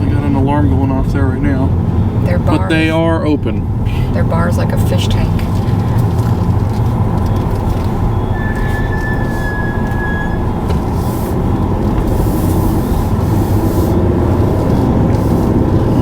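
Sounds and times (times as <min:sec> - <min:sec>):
car road and engine rumble: 0:00.0 - 0:16.0
alarm high tone: 0:08.1 - 0:10.6.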